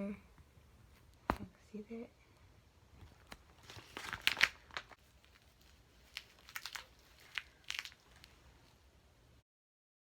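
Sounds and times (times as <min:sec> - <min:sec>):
packaging crinkling: 0:03.0 - 0:08.8.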